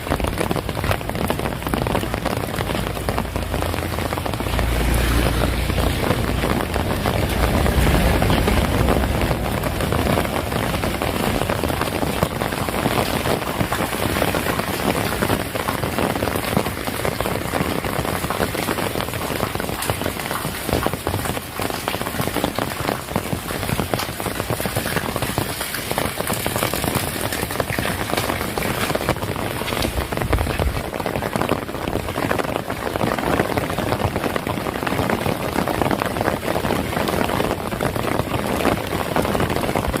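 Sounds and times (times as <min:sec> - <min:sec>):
heavy rain: 0:00.0 - 0:40.0
low rumble: 0:00.7 - 0:13.8.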